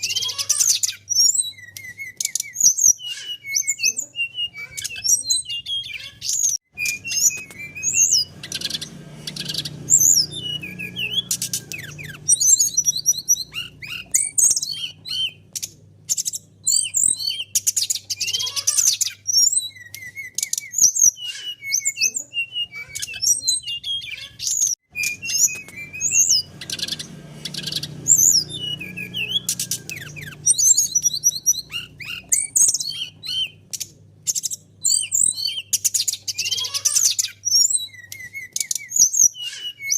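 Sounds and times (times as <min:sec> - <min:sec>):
birds chirping and whistling: 0:00.0 - 0:39.9.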